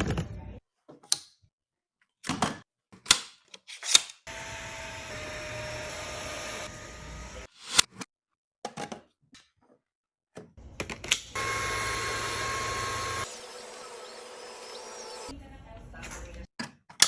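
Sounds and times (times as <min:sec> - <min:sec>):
cordless vacuum running: 0:04.3 - 0:07.5, 0:11.4 - 0:15.3.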